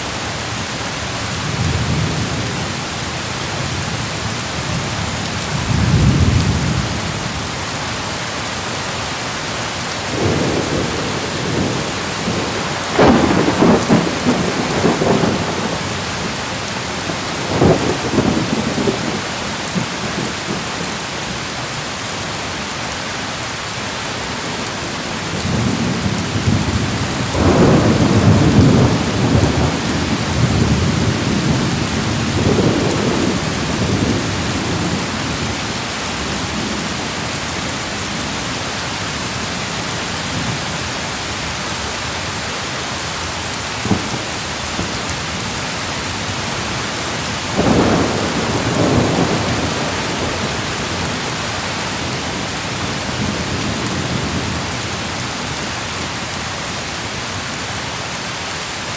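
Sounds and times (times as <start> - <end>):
steady rain: 0.0 - 58.9
thunder rumbling: 10.0 - 20.8, 24.9 - 35.7, 43.8 - 55.0.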